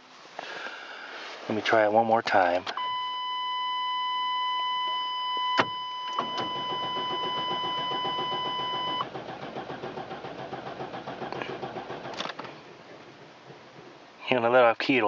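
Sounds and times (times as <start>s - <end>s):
starter cranking engine: 6.2s - 14.0s.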